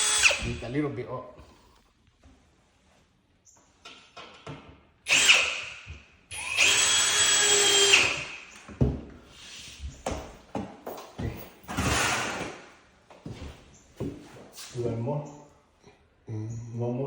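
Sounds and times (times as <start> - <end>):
power drill driving screws: 0.0 - 0.6, 5.1 - 8.5.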